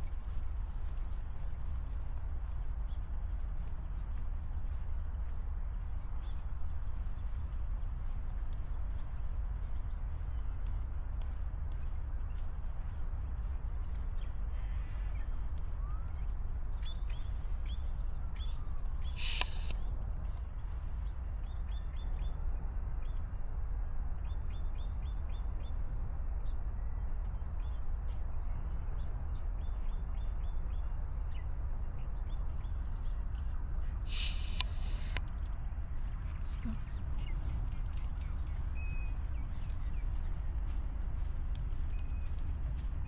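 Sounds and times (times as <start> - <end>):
birds chirping: 13.9 - 21.1, 32.2 - 40.5
harsh bird calls: 19.2 - 19.7, 34.1 - 35.2.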